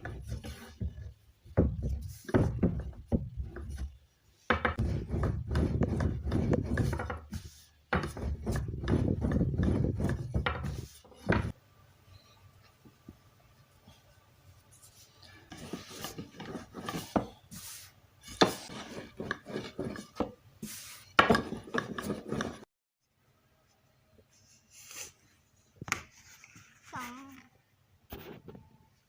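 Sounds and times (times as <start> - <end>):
dough rubbing on wooden board: 0.0 - 4.0, 4.7 - 11.6, 14.7 - 22.7.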